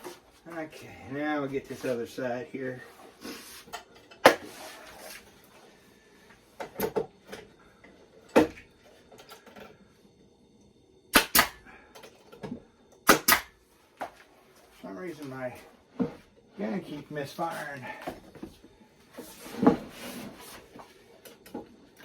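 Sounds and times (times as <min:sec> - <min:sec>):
nail gun firing into plywood: 0:11.1 - 0:11.6, 0:13.0 - 0:13.6.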